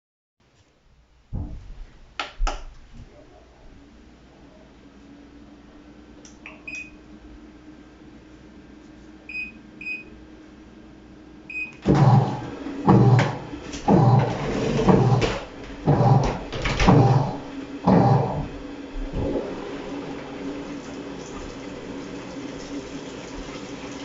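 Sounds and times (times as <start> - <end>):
washing machine control-panel beeps: 6.3 - 7.0, 9.3 - 10.2, 11.5 - 12.3
washer motor turning drum: 11.5 - 24.0.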